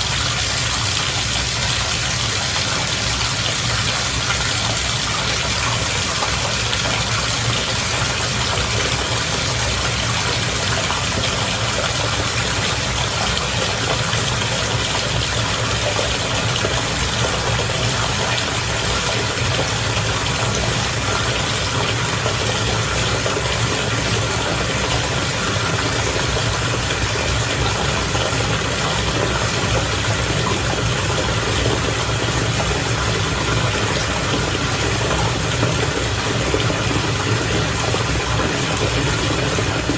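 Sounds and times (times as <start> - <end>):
bath water bubbling: 0.0 - 39.9.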